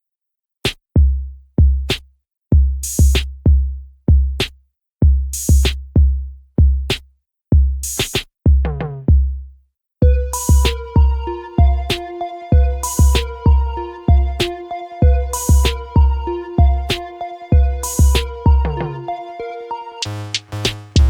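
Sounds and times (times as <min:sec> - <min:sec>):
drum machine beat: 0:00.7 - 0:09.4, 0:10.0 - 0:19.2, 0:20.0 - 0:21.0
sustained synth chords: 0:10.0 - 0:21.0.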